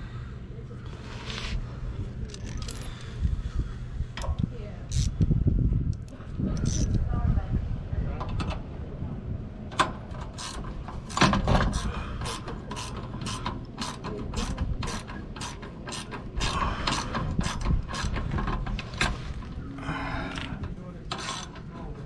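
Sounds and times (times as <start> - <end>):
ratchet wrench clicking: 4.9 - 5.1, 5.9 - 7.0, 10.3 - 18.2, 21.1 - 21.6.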